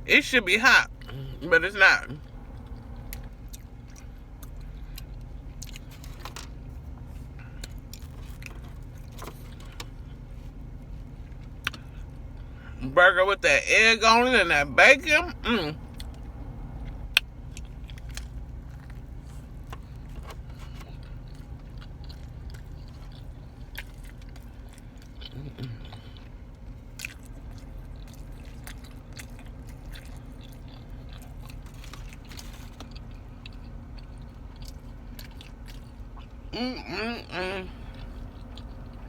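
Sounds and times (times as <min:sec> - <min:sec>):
person chewing food: 0:02.1 - 0:12.6, 0:15.8 - 0:39.0
low hum: 0:13.9 - 0:39.0.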